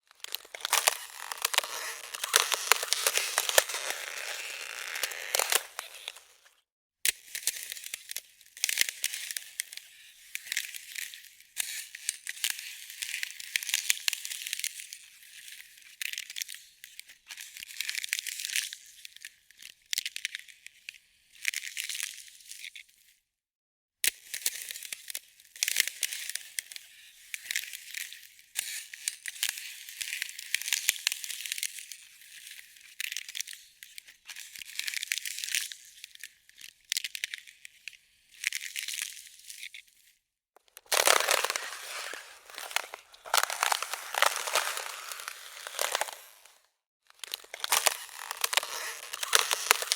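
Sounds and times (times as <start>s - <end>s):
ice cracking and crackling: 0.1s - 6.5s, 40.6s - 49.9s.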